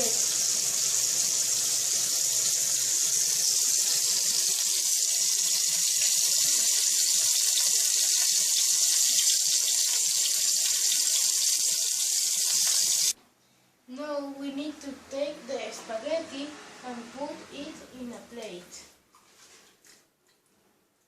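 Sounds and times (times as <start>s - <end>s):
meat sizzling in oil: 0.0s - 13.2s.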